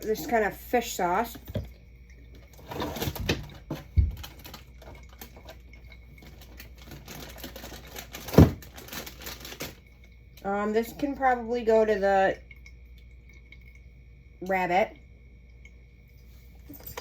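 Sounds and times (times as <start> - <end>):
bottles and jars clicking and rattling: 1.1 - 10.5, 16.6 - 17.0.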